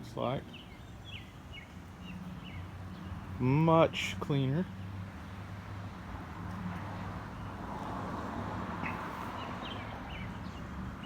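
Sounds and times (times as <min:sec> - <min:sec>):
bird chirps: 0:00.5 - 0:03.1.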